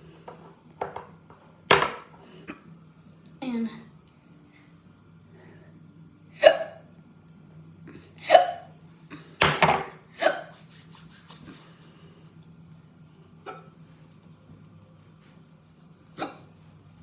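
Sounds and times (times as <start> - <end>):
person hiccuping: 6.4 - 6.9.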